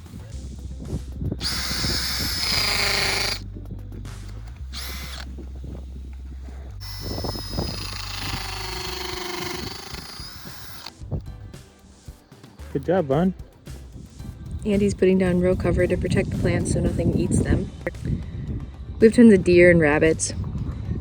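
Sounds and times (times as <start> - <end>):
background music with bass: 0.0 - 21.0
power drill whining: 1.4 - 3.4, 4.6 - 11.0.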